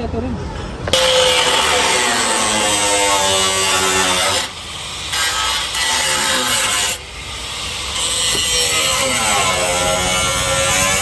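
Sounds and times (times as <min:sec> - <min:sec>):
power cutter grinding sheet metal: 0:00.9 - 0:11.0.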